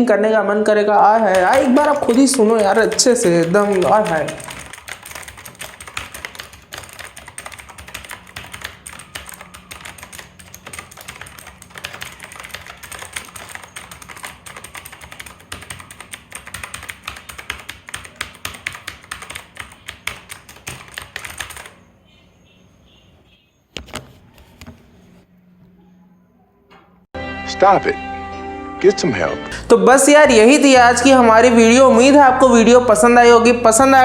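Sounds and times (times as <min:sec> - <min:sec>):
mechanical keyboard typing: 0:01.2 - 0:21.8.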